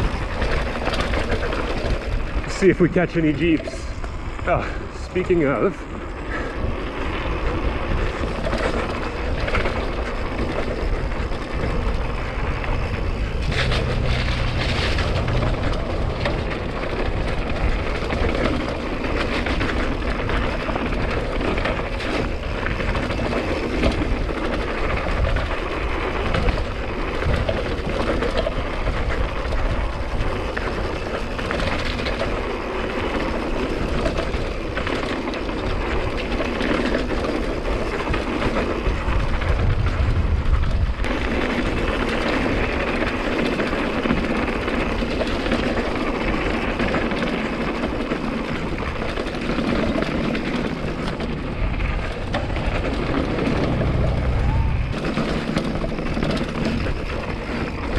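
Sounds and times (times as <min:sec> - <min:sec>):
tyres crunching over gravel: 0:00.0 - 0:39.9
bike rattling and knocking: 0:00.0 - 0:57.9.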